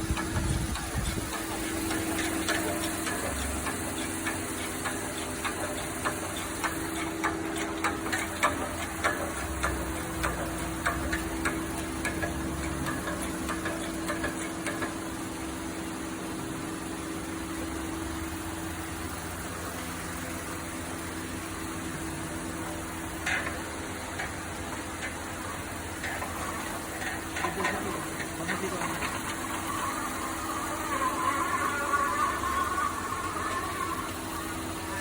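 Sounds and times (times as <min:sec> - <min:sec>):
engine running: 0:00.0 - 0:35.0
sharp irregular clicks: 0:00.1 - 0:15.0.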